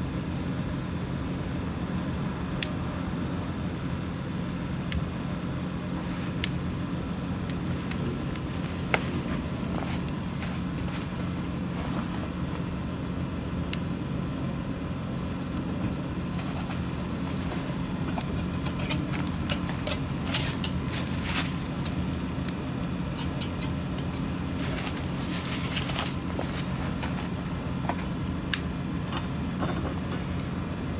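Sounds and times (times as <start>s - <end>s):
steady low hum: 0.0s - 30.9s
wood fire crackling and popping: 5.8s - 12.8s, 13.5s - 14.0s, 15.0s - 30.8s.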